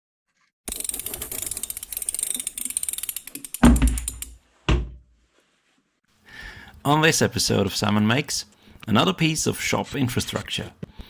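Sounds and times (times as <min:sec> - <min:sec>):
mechanical ratcheting clicks: 0:00.7 - 0:04.4.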